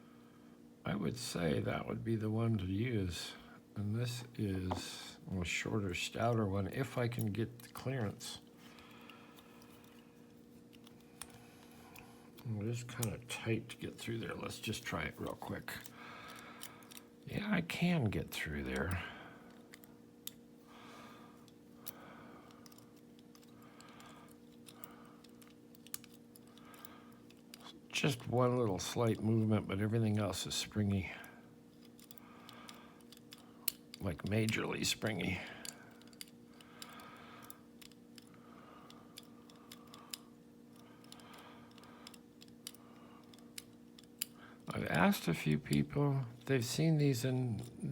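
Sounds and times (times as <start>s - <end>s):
steady low hum: 0.0s - 47.9s
lock pick clicking and scraping: 14.6s - 17.1s, 21.4s - 27.8s, 31.8s - 34.6s, 35.6s - 44.4s.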